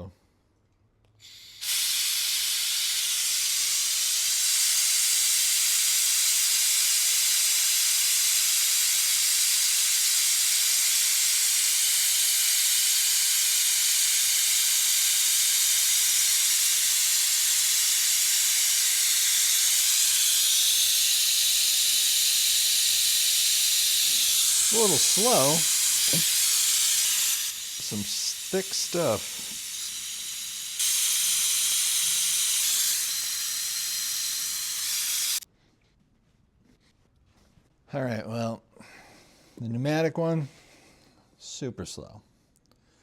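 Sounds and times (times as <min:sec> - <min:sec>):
pneumatic extractor hissing: 0:01.2 - 0:35.4.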